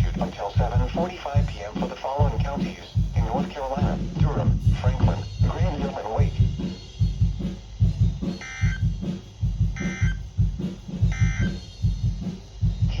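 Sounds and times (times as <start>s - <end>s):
background music with drum beat: 0.0s - 13.0s
digital data tone bursts: 9.8s - 10.2s, 11.1s - 11.6s.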